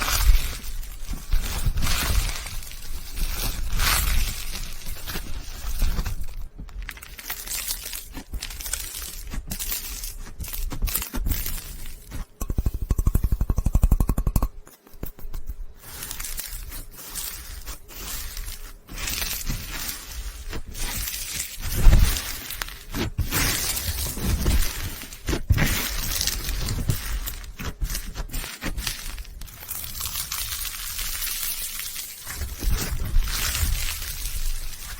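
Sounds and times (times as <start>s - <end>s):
slime crackling and popping: 0.0s - 34.9s.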